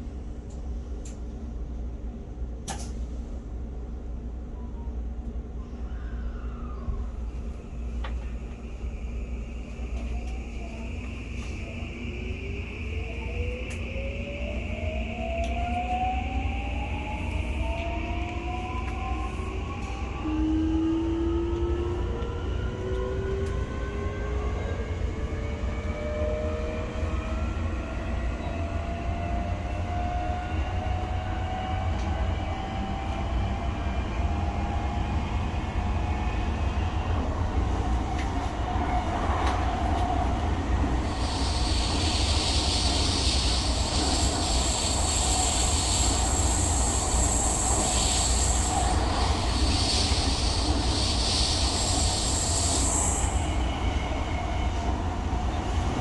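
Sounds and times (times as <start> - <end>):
train rushing hiss: 40.9 - 54.9
electric train motors whining: 41.0 - 53.6.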